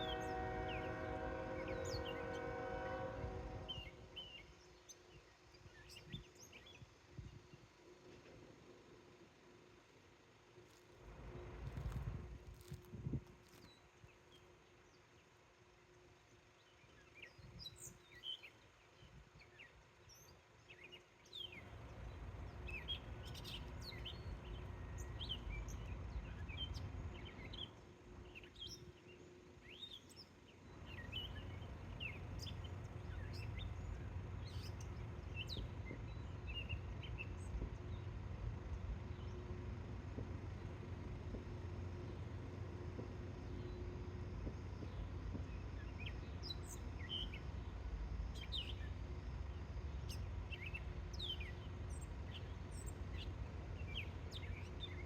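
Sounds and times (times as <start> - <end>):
low rumble: 11.1 - 13.3
small birds chirping: 44.7 - 55.0.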